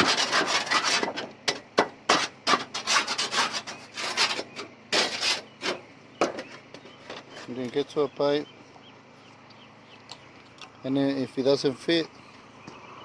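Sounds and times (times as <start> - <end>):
scraping on roof shingles: 0.0 - 7.6.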